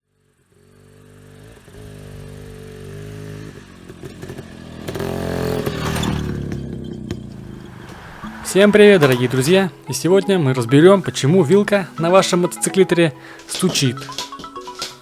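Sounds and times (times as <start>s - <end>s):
motorcycle engine revving: 0.1s - 10.3s.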